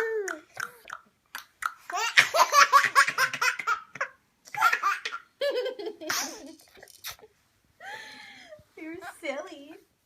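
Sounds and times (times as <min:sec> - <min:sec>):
baby laughing: 0:01.8 - 0:07.2.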